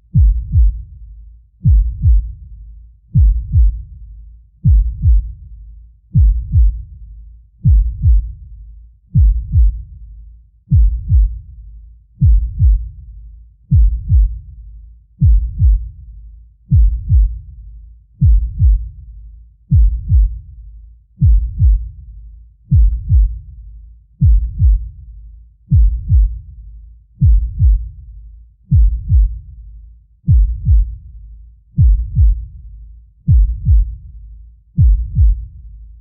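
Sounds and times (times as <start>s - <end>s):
heartbeat thumps: 0.0s - 1.0s, 1.6s - 2.5s, 3.1s - 4.0s, 4.6s - 5.4s, 6.1s - 7.0s, 7.6s - 8.4s, 9.1s - 10.0s, 10.7s - 11.5s, 12.2s - 13.0s, 13.7s - 14.5s, 15.2s - 16.0s, 16.7s - 17.5s, 18.2s - 19.0s, 19.7s - 20.4s, 21.2s - 22.0s, 22.7s - 23.5s, 24.2s - 25.0s, 25.7s - 26.5s, 27.2s - 28.0s, 28.7s - 29.5s, 30.2s - 31.0s, 31.8s - 32.6s, 33.2s - 34.1s, 34.8s - 36.0s.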